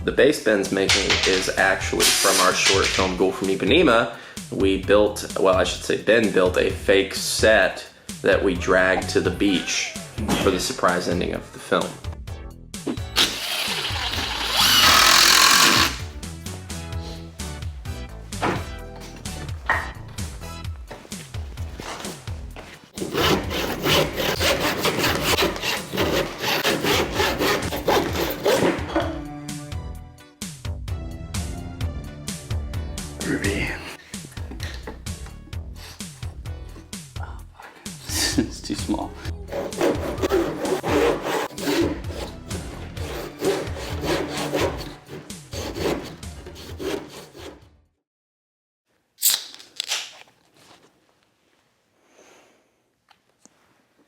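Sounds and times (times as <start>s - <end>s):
background music: 0.0s - 47.9s
hand saw cutting wood: 13.0s - 16.1s, 23.0s - 29.2s, 39.1s - 47.7s.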